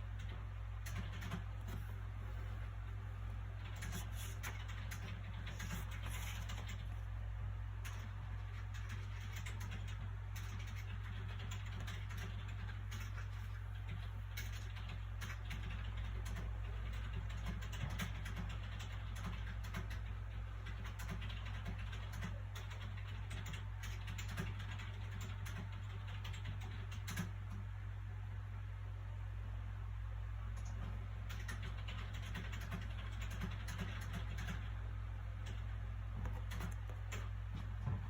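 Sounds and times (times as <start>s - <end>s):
low background hum: 0.0s - 38.0s.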